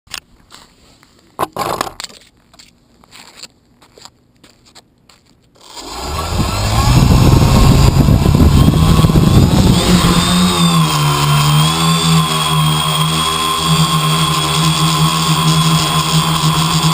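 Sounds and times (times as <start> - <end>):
engine starting and running: 5.6 - 16.9.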